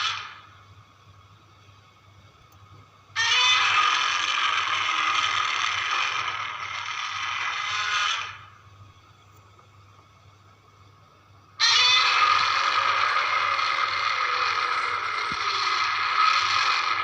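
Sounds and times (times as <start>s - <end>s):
monster roar: 11.7s - 17.0s.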